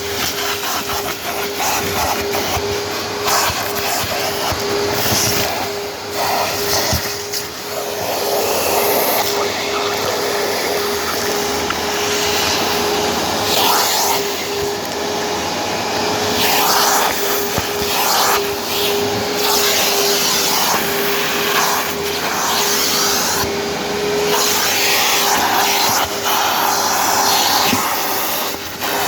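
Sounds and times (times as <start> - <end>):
vacuum cleaner running: 0.0 - 29.0.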